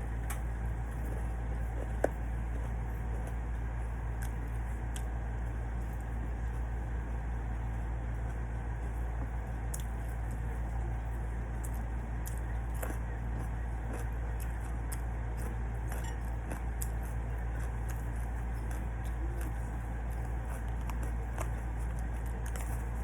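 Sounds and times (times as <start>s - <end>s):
steady low hum: 0.0s - 23.0s
chewing: 0.1s - 23.0s.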